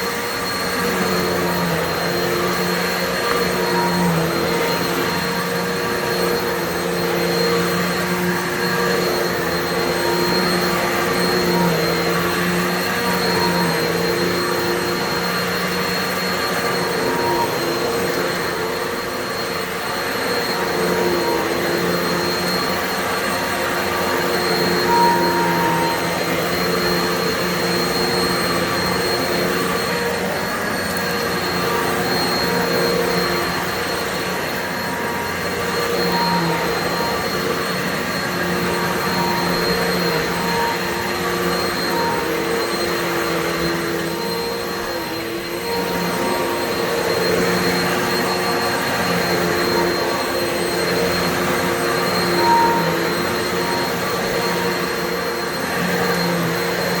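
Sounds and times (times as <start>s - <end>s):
vacuum cleaner running: 0.0s - 57.0s.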